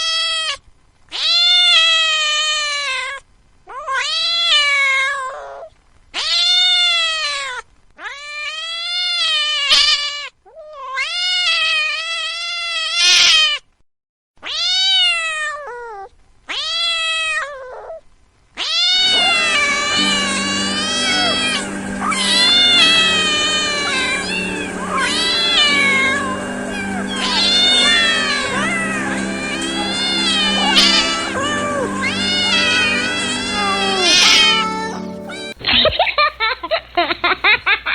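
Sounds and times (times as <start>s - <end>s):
cat meowing: 0.3s - 3.1s, 3.7s - 5.6s, 14.4s - 17.9s, 18.6s - 35.9s
steady humming background: 19.1s - 37.8s.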